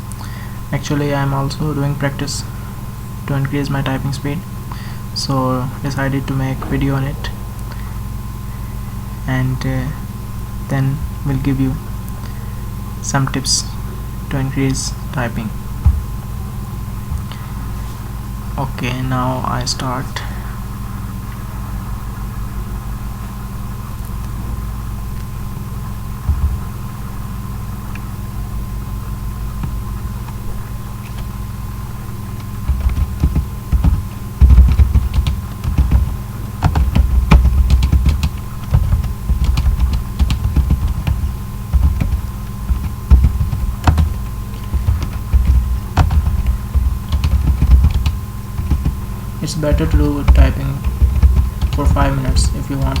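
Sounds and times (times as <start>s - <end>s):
electrical hum: 0.0s - 53.0s
low thumps: 15.6s - 17.3s, 26.2s - 26.9s, 32.4s - 53.0s
keyboard typing clicks: 32.2s - 53.0s.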